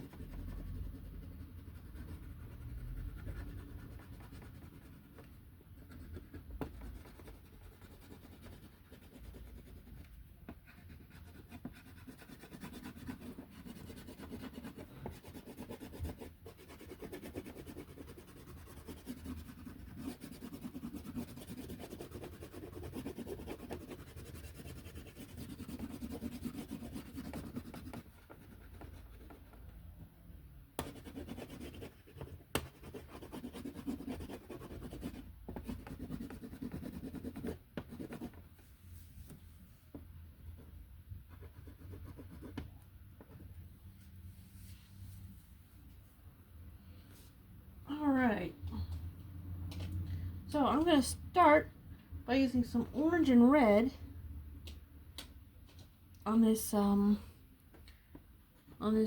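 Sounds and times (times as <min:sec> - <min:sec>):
coloring tool scratching on paper: 0:00.0 - 0:29.7, 0:30.8 - 0:38.4, 0:41.3 - 0:43.4.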